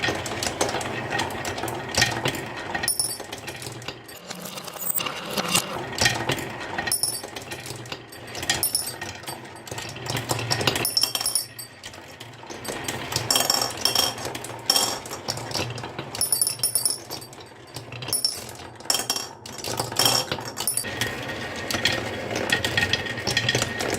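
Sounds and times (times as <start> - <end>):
marbles clattering on wooden run: 0.0 - 21.1.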